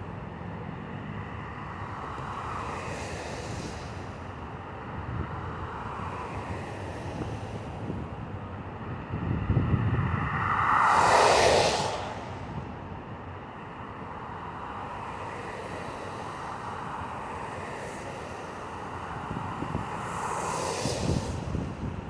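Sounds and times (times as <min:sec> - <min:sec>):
steady traffic rush: 0:00.0 - 0:22.0
vehicle passing with a whoosh: 0:09.1 - 0:13.2, 0:17.4 - 0:22.0.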